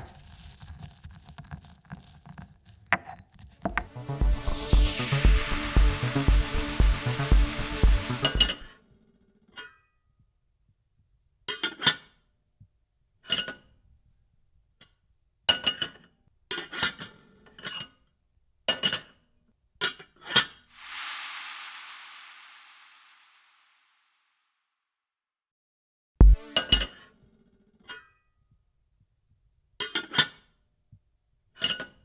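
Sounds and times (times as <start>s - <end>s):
hiss: 4.0s - 8.6s, 20.8s - 24.2s.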